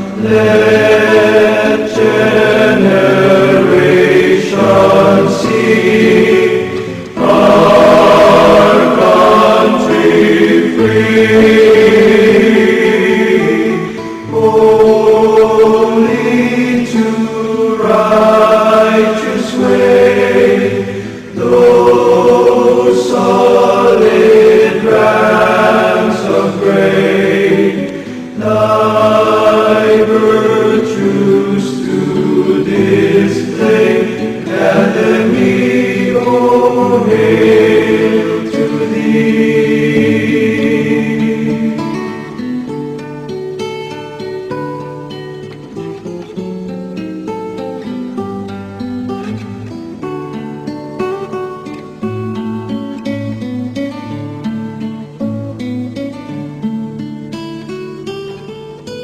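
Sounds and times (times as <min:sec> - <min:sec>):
choir singing held chords: 0:00.0 - 0:44.5
singers breathing: 0:13.8 - 0:14.2, 0:20.8 - 0:21.4, 0:27.9 - 0:28.4.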